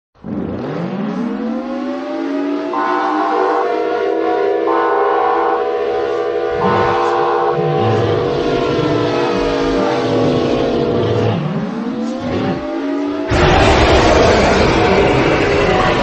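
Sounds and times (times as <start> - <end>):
multi-tone horn chord: 2.1 - 11.6
loud rushing noise: 13.2 - 16.0.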